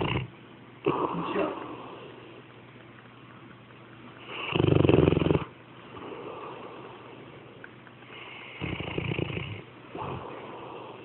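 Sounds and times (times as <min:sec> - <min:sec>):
pet snoring loudly: 0:00.0 - 0:01.2, 0:04.2 - 0:06.2, 0:08.2 - 0:11.0.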